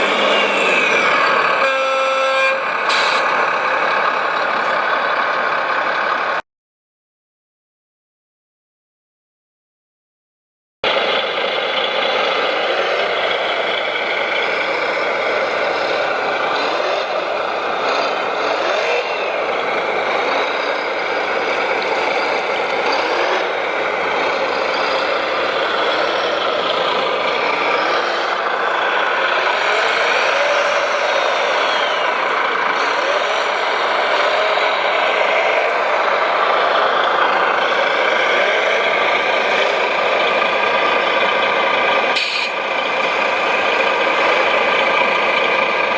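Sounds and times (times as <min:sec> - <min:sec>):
electric motors whining: 0:29.3 - 0:35.4.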